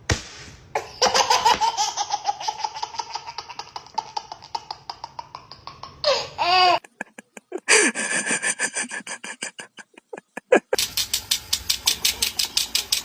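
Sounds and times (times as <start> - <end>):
stuttering comedy laugh: 5.2 - 10.9
breathy laugh: 6.0 - 10.8.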